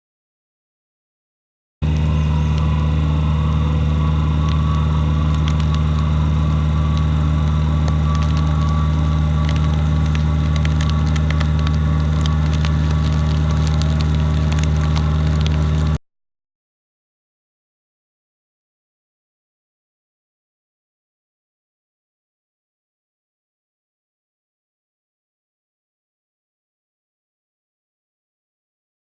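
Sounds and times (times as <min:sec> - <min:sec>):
excavator diesel engine running: 0:01.8 - 0:16.0
wood crackling and cracking: 0:01.8 - 0:16.0.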